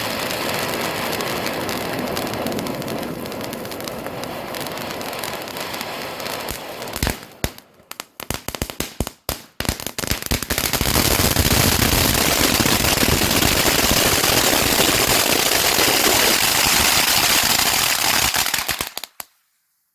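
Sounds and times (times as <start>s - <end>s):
fountain firework hissing: 0.0s - 7.0s, 10.7s - 19.1s
firework crackling: 0.0s - 19.4s.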